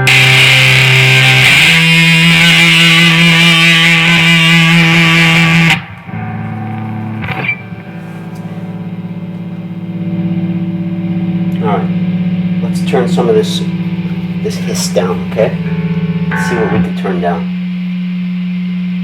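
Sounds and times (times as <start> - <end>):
amp buzzing hum with hiss: 0.0 - 19.0
distorted electric guitar note: 0.0 - 19.0.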